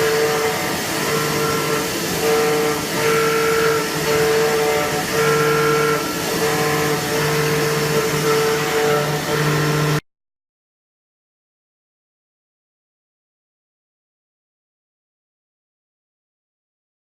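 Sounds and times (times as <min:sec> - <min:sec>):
cnc machine humming: 0:00.0 - 0:10.0.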